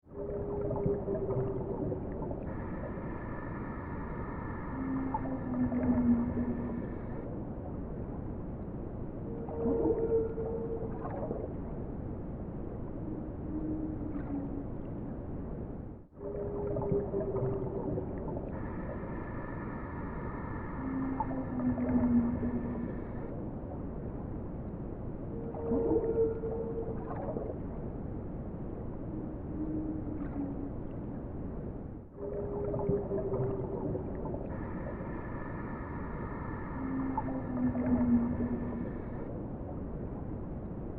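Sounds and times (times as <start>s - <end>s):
whale moans: 2.7s - 7.2s, 18.8s - 23.3s, 34.8s - 39.3s.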